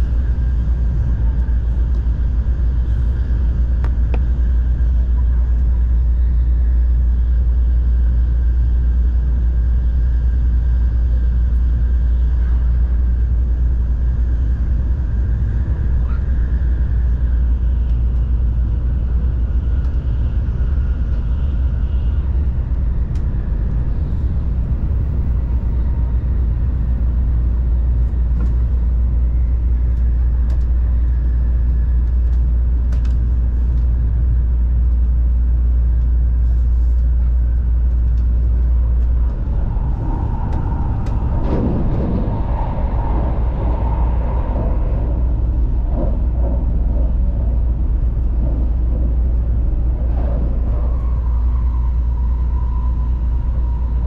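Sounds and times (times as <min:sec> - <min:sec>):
train rumble inside cabin: 0:00.0 - 0:54.0
rough high-pitched train noise: 0:20.4 - 0:31.6, 0:36.4 - 0:54.0.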